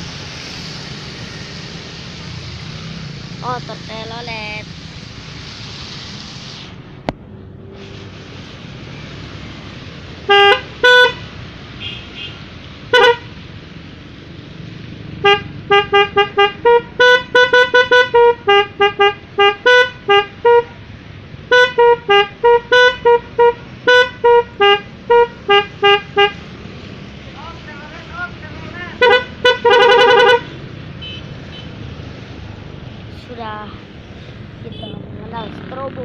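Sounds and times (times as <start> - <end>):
motorcycle multi-tone horn toots: 10.3 - 13.3, 15.2 - 20.8, 21.5 - 26.4, 28.9 - 31.8, 34.7 - 35.0.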